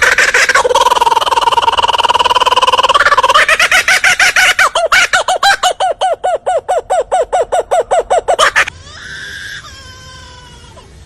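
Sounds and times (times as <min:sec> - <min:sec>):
bird calling repeated notes: 0:05.2 - 0:08.7.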